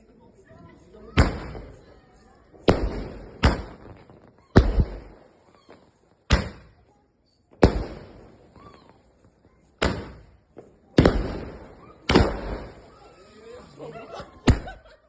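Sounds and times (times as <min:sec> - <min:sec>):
firework bangs echoing: 0:01.1 - 0:01.9, 0:02.6 - 0:06.9, 0:07.5 - 0:09.0, 0:09.6 - 0:13.3.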